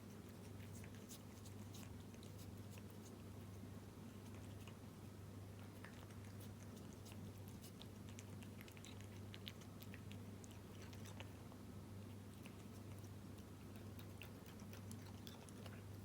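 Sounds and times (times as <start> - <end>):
cat chewing food: 0.0 - 16.0.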